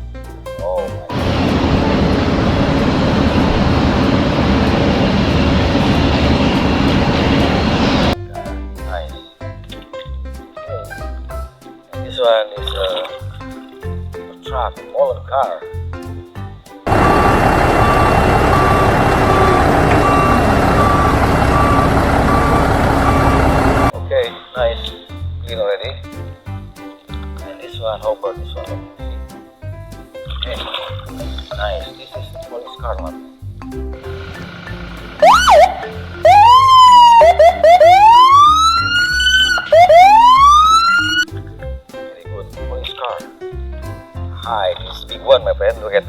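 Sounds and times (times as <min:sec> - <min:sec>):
background music with steady beat: 0:00.0 - 0:46.0
police siren wailing: 0:01.1 - 0:08.2, 0:16.9 - 0:23.9, 0:35.2 - 0:41.2
truck diesel engine running: 0:01.1 - 0:08.2, 0:16.9 - 0:24.0, 0:34.0 - 0:41.2
reversing alarm beeping: 0:16.9 - 0:23.9, 0:34.1 - 0:41.2.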